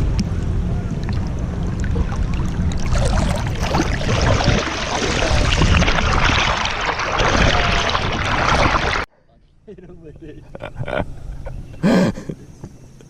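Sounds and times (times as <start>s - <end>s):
wind rumble on microphone: 0.0s - 9.0s
water rushing and splashing: 0.0s - 9.1s.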